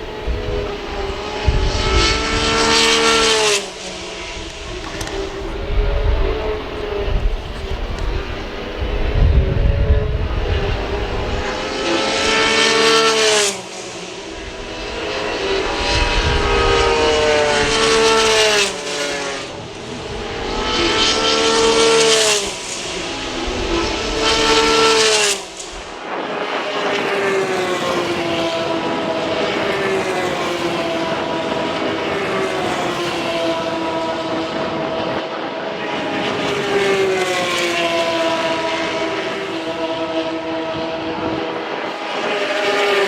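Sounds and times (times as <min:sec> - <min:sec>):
race car engines passing: 0:00.0 - 0:43.0.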